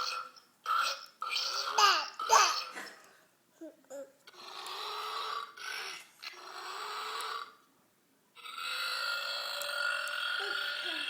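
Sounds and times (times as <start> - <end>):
long drawn-out burps: 8.4 - 11.0.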